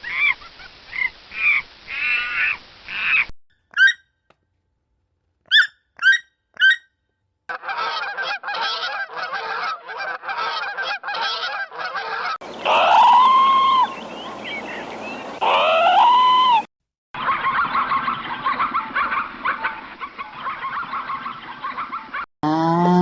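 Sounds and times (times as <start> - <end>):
goose-like honks: 7.5 - 13.9
rising bird calls: 12.4 - 22.1
harsh bird calls: 12.4 - 22.2.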